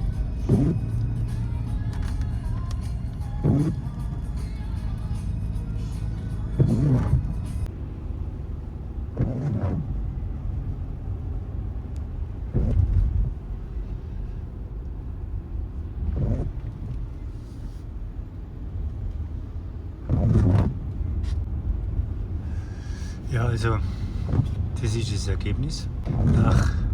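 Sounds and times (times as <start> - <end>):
road rumble inside cabin: 0.0 - 26.9
windscreen wipers squeaking: 0.1 - 1.2, 2.0 - 4.2, 6.6 - 7.6, 9.0 - 10.1, 12.4 - 14.0, 16.0 - 18.0, 20.0 - 21.5, 23.1 - 26.9.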